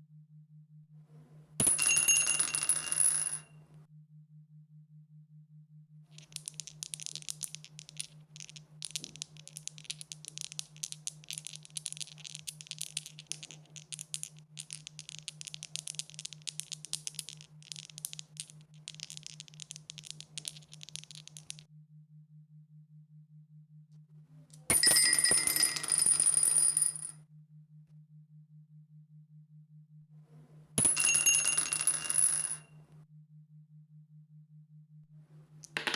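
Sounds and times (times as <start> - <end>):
dice rattling: 6.2 - 21.6, 35.6 - 35.9.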